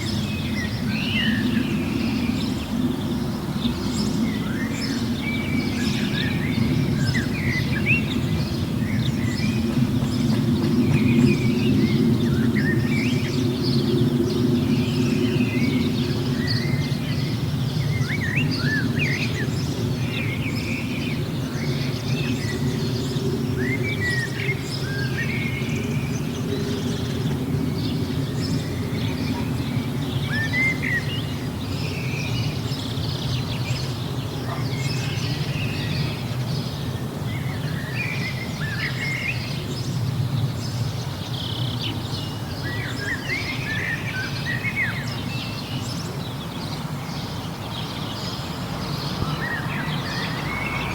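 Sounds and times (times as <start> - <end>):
small birds chirping and singing: 0.0 - 50.9.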